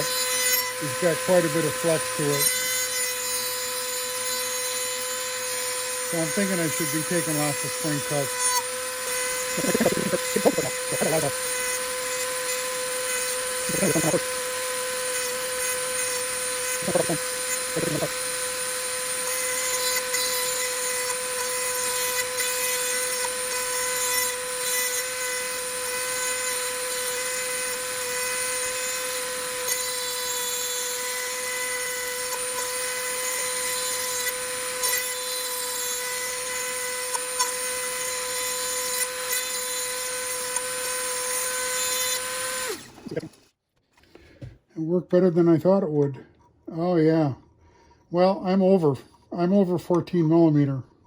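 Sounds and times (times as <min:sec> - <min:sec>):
scratchy grinding hiss: 0:00.0 - 0:14.4
rotary tool whine: 0:00.0 - 0:44.5.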